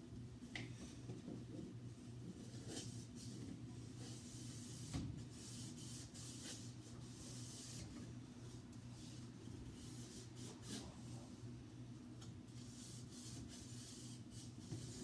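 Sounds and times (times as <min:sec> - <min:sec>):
steady low hum: 0:00.0 - 0:15.0
sponge scrubbing a surface: 0:12.6 - 0:15.0.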